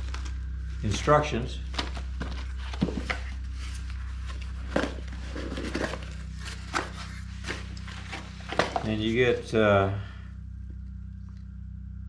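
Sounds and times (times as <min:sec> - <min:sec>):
packaging clicks and rustles: 0:00.0 - 0:09.5
steady low hum: 0:00.0 - 0:12.0.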